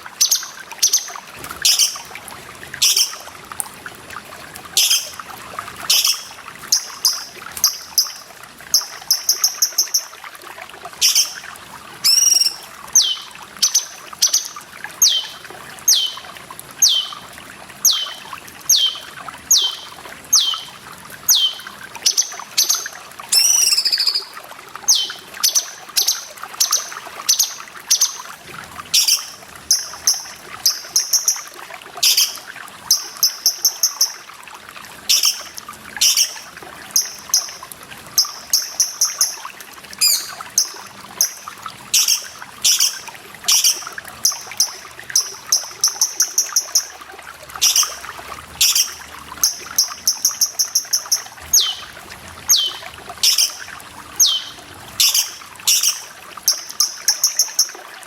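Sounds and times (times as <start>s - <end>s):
water trickling: 0.0s - 58.0s
bird calling sharp high notes: 12.0s - 14.4s, 15.0s - 17.2s, 17.9s - 20.7s, 21.3s - 22.3s, 23.3s - 24.3s, 40.0s - 40.8s, 49.8s - 53.6s, 54.2s - 56.6s.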